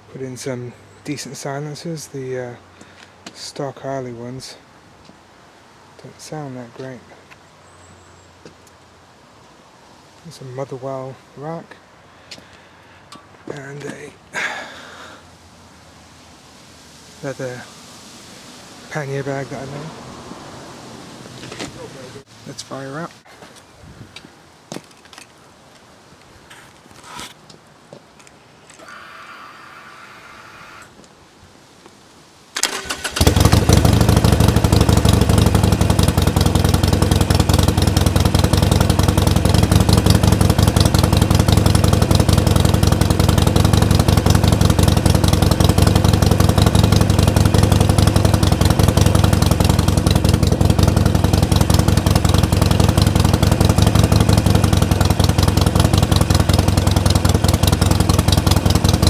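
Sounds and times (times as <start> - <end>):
motorcycle engine starting and idling: 13.0 - 14.8, 18.9 - 22.2, 32.6 - 59.0.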